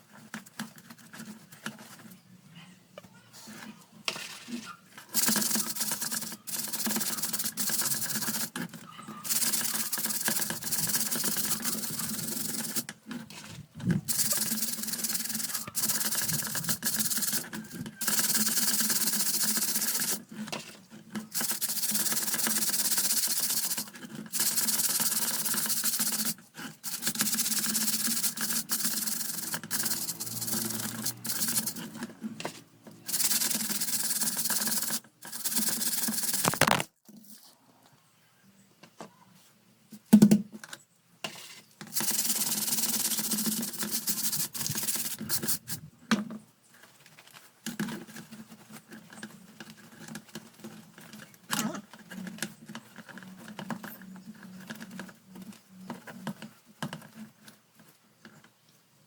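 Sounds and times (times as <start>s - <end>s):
scrubbing fan parts: 4.2s - 37.4s, 41.9s - 45.9s.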